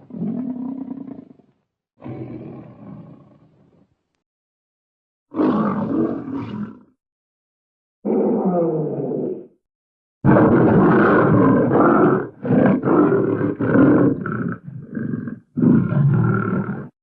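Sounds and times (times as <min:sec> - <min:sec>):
bear growling: 0:10.3 - 0:17.0.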